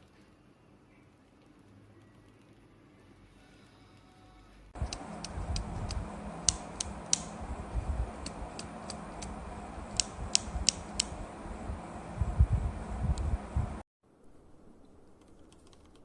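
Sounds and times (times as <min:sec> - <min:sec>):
keyboard switches clicking: 0:04.8 - 0:07.4, 0:08.2 - 0:11.2
low handling noise: 0:04.8 - 0:13.8.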